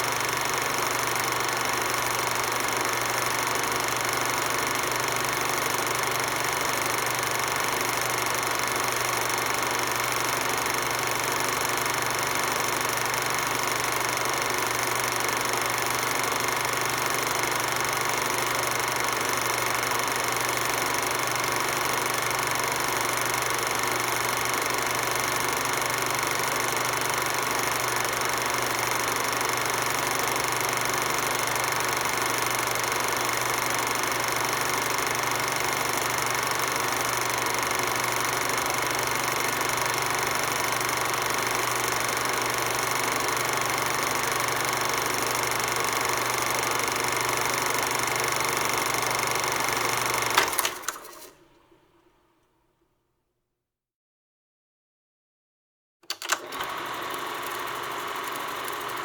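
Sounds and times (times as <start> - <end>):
projector whirring: 23.2 - 52.0, 56.1 - 59.0
sharp click: 56.0 - 56.6.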